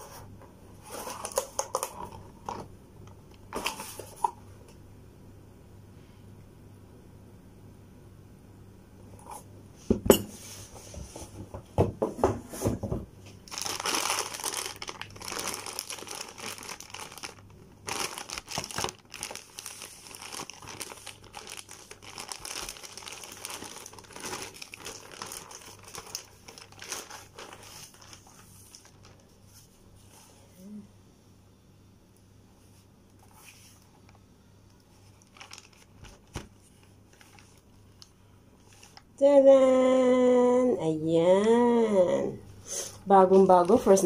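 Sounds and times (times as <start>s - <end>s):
plastic packaging crinkling: 0.8s - 2.6s, 13.4s - 29.4s, 34.9s - 39.0s, 43.2s - 44.0s.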